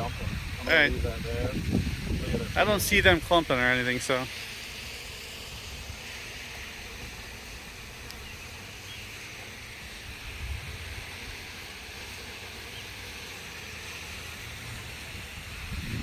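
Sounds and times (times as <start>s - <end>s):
wind rumble on microphone: 0.0s - 3.5s, 10.1s - 11.4s, 15.1s - 16.0s
bees buzzing: 0.0s - 16.0s.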